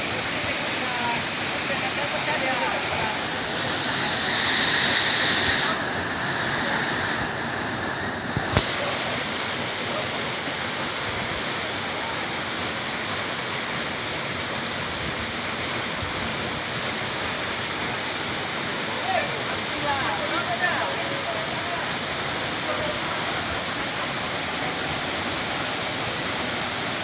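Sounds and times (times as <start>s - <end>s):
waterfall roaring: 0.0s - 27.0s.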